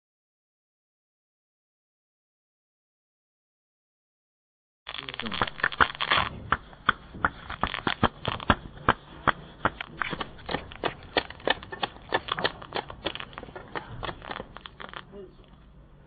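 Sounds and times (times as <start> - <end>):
sharp clicks and knocks: 4.9 - 15.1.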